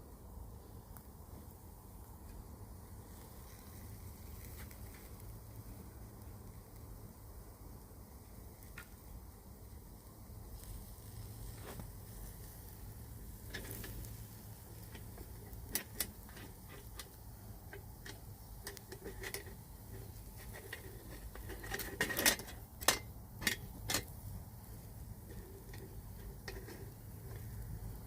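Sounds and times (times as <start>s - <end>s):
low steady hum: 0.0s - 28.0s
light clicks and clinks: 14.8s - 24.2s, 25.3s - 27.6s.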